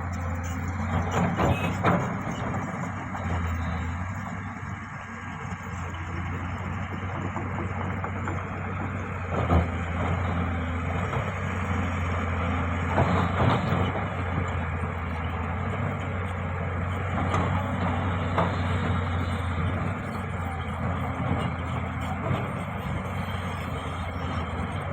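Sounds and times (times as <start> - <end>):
diesel engine running: 0.0 - 24.9.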